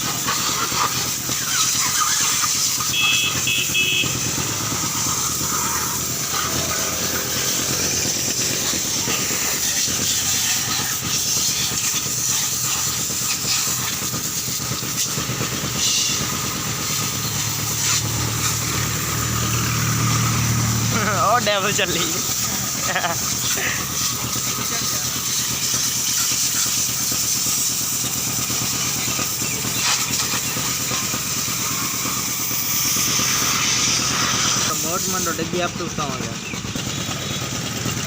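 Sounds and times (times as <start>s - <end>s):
motor hum: 0.0s - 38.0s
pressure washer jet hissing: 0.0s - 38.0s.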